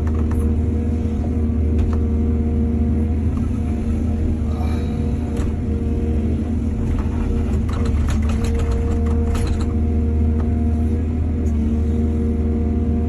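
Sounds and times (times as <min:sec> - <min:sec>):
diesel engine running: 0:00.0 - 0:13.0
metal clatter and clanks: 0:06.8 - 0:09.8.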